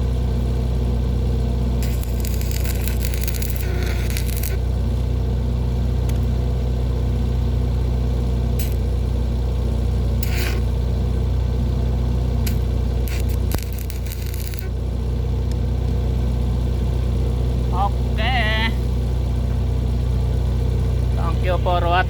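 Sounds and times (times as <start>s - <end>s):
engine idling: 0.0s - 22.0s
short scraping hisses: 10.2s - 10.7s.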